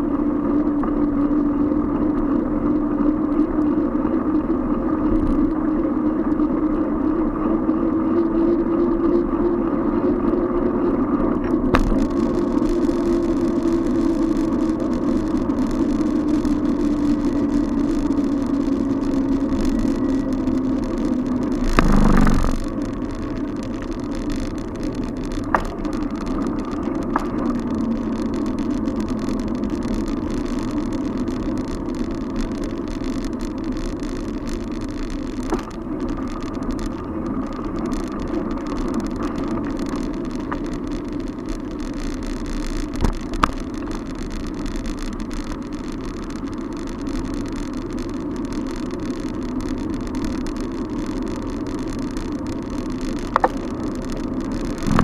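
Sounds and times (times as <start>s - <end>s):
road and traffic noise: 0.0s - 55.0s
sharp clicks: 21.5s - 22.7s.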